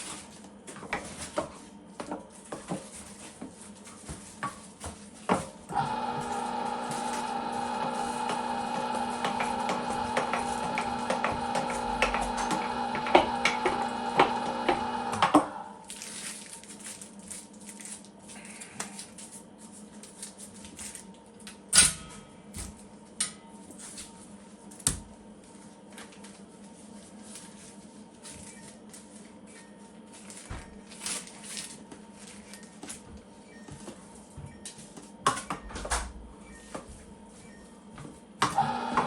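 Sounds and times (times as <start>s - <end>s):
objects clicking on a work surface: 9.2s - 15.5s.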